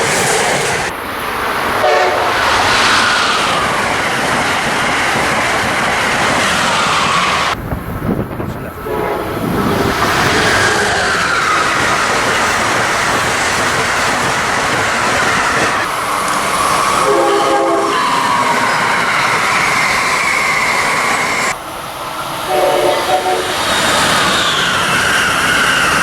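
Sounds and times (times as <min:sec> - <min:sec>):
train wheels rushing on rails: 0:00.0 - 0:26.0
high whining tone: 0:00.9 - 0:04.9
locomotive air horn blast: 0:01.8 - 0:02.8, 0:08.8 - 0:09.6, 0:17.0 - 0:18.1, 0:22.5 - 0:23.7.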